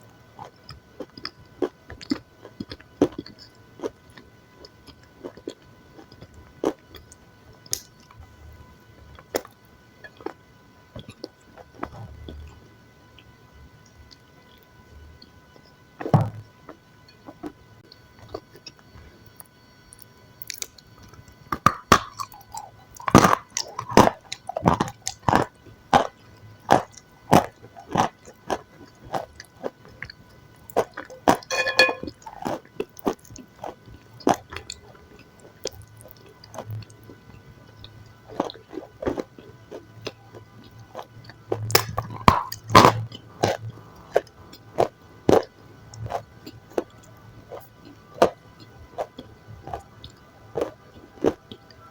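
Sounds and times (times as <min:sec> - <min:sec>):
person chewing crunchy food: 0:00.4 - 0:08.0, 0:20.4 - 0:32.1, 0:38.2 - 0:51.5.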